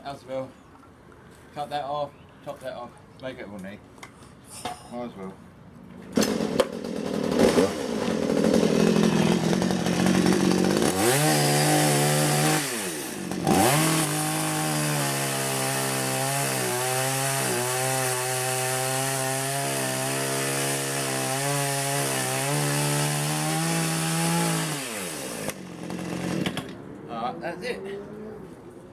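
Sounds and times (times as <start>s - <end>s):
chainsaw cutting through wood: 6.2s - 26.8s.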